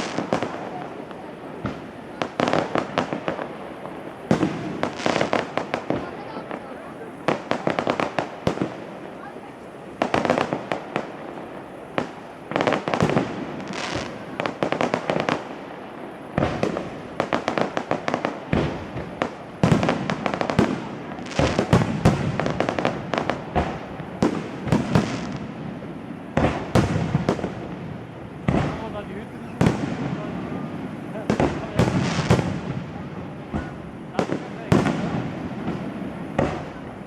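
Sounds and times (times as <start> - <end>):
firework bangs and crackles: 0.0 - 37.0.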